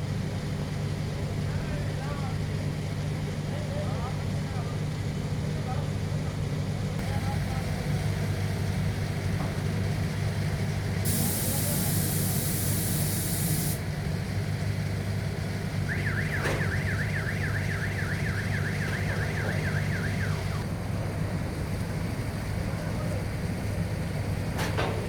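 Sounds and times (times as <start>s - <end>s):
loud air hiss: 11.0s - 13.9s
warbling electronic alarm: 15.9s - 20.6s.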